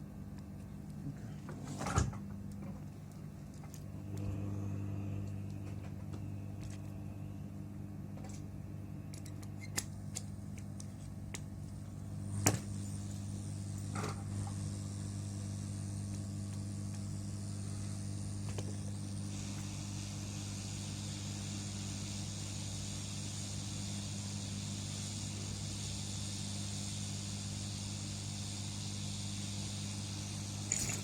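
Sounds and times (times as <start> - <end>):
low electrical hum: 0.0 - 31.0
hiss: 12.3 - 31.0.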